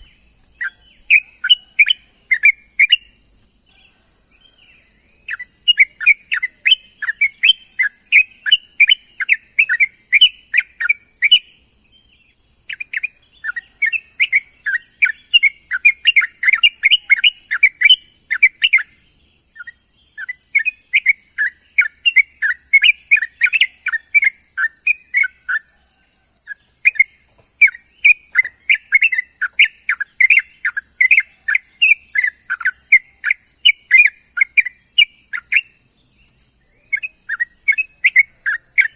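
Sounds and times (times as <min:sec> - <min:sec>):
steady high hiss: 0:00.0 - 0:30.8.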